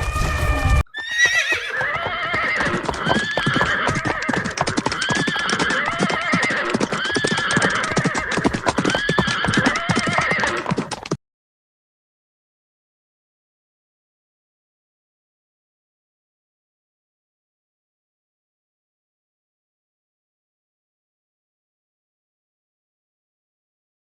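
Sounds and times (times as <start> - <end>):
horses galloping hoofbeats: 0.9 - 11.2
horses neighing: 0.9 - 11.2.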